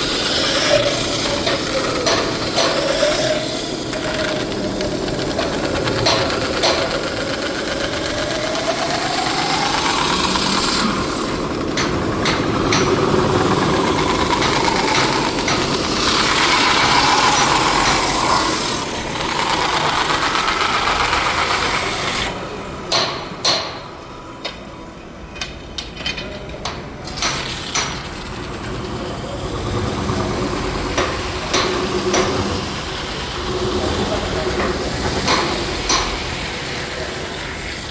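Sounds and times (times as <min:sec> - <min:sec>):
metal lathe running with squeal: 0:00.0 - 0:22.5
sharp clicks and knocks: 0:00.6 - 0:28.7, 0:30.9 - 0:32.6, 0:34.5 - 0:36.3.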